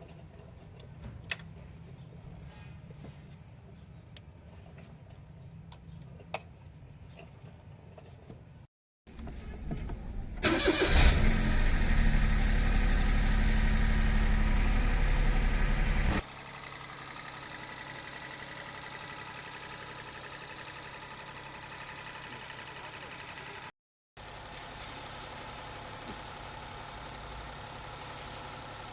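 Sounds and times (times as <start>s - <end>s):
car engine idling: 9.2s - 23.6s.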